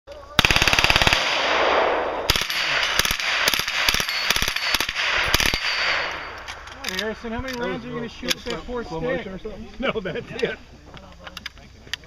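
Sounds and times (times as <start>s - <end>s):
single gunshots: 0.4s - 6.3s
rifle automatic burst: 0.4s - 6.7s.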